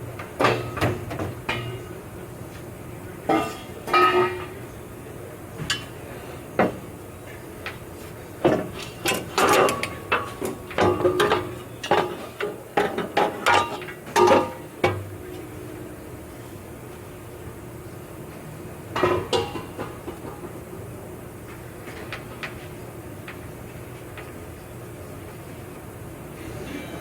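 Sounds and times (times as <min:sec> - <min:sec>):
metal exhaust pipes clanking: 0:03.3 - 0:04.6, 0:08.4 - 0:15.5, 0:18.9 - 0:20.9.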